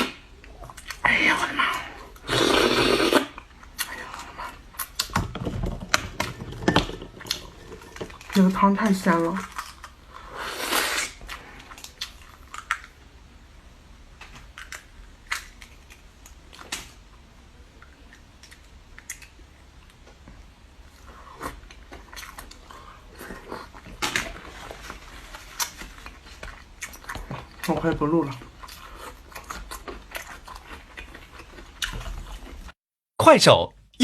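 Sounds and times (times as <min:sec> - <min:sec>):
slurping soup: 0:02.2 - 0:04.6, 0:10.3 - 0:11.2
wet chewing and mouth smacks: 0:28.4 - 0:32.7.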